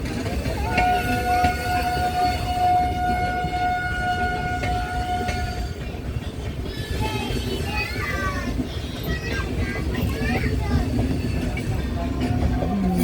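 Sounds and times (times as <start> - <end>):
train rumbling: 0.0 - 13.0
train horn: 0.5 - 5.9.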